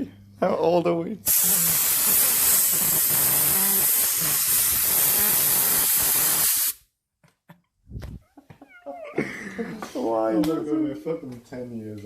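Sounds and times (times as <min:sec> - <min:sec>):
loud spraying hiss: 0:01.3 - 0:06.8.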